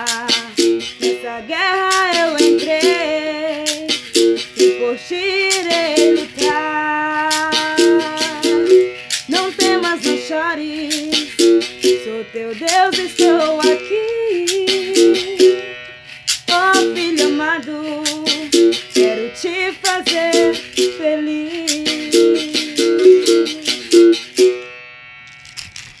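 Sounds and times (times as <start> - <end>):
berimbau playing: 0.0 - 25.6.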